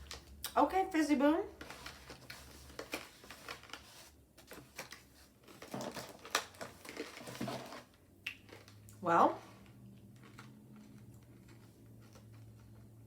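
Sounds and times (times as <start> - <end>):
candy wrapper crinkling: 1.6 - 8.9.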